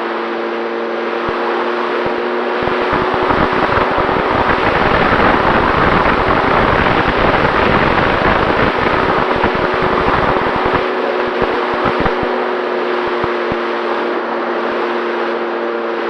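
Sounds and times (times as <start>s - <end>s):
electric motor and propeller hum: 0.0s - 16.0s
wind buffeting microphone: 1.2s - 13.6s.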